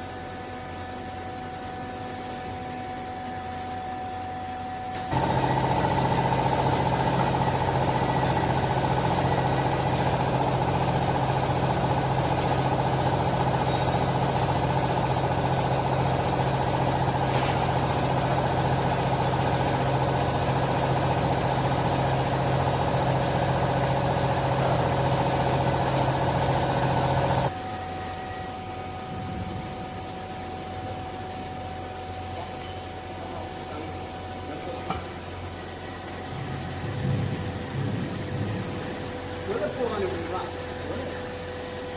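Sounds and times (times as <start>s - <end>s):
hydraulic pump motor humming: 4.9s - 28.1s.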